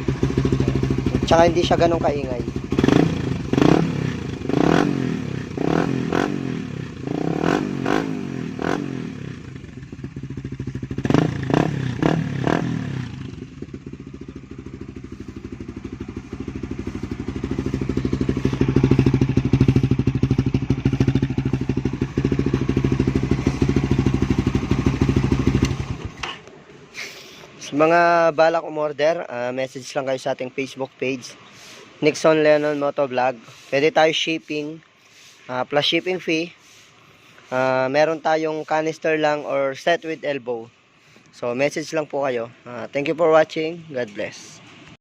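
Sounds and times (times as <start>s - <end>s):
motorcycle engine revving: 0.0s - 27.9s.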